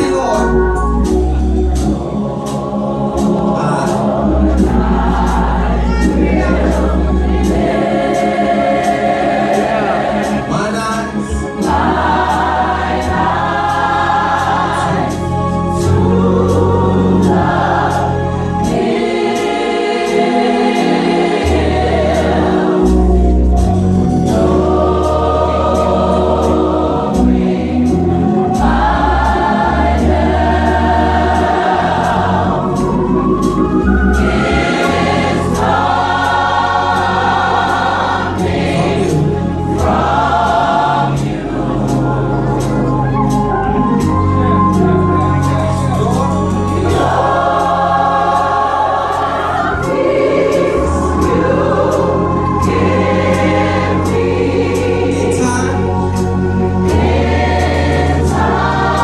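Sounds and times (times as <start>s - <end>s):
gospel choir singing: 0.0s - 59.0s
low bass accompaniment: 0.0s - 59.0s.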